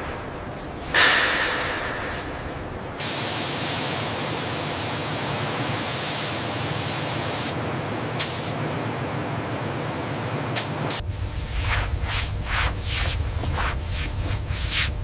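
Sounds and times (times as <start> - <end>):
spraying hiss: 3.0 - 7.6.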